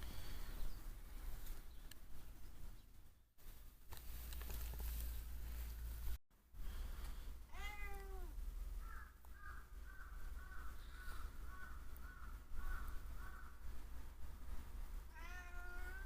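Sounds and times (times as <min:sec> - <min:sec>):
cat meowing: 0:07.5 - 0:08.4, 0:15.1 - 0:16.0.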